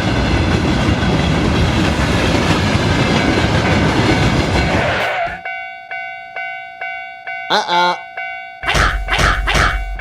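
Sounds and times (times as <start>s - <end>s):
level-crossing warning bell dinging: 5.4s - 9.1s.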